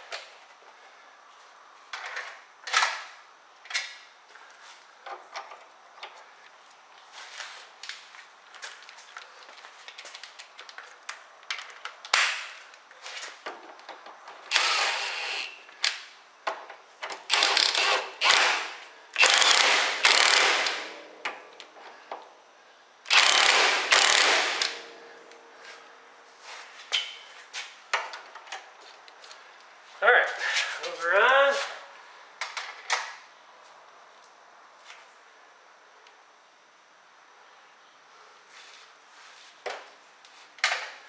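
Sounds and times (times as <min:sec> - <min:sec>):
ratchet wrench clicking: 0:17.3 - 0:18.6, 0:19.2 - 0:20.7, 0:23.1 - 0:24.8.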